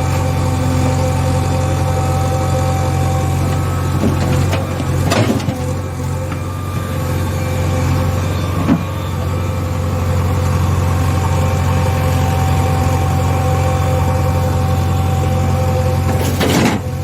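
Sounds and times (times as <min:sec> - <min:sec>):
toy motor humming and whining: 0:05.8 - 0:15.9.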